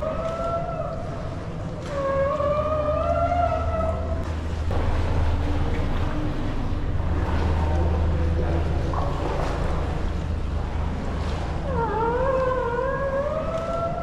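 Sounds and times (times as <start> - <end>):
boat engine humming: 0.0 - 14.0.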